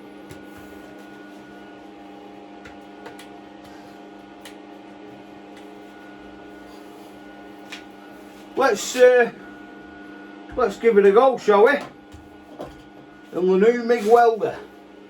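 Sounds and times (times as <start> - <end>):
welder electrical hum: 0.0 - 15.0.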